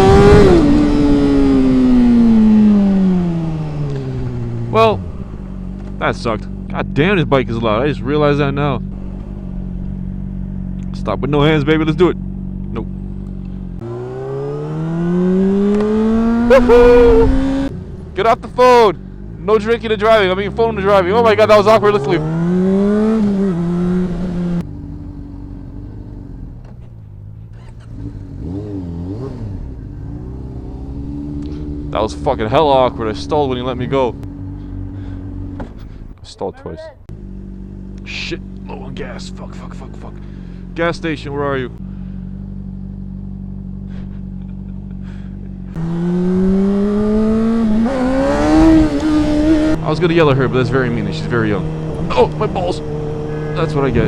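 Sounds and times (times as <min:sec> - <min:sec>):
motorcycle engine revving: 0:00.0 - 0:36.2, 0:37.0 - 0:54.0
quieter engine note: 0:37.1 - 0:47.3.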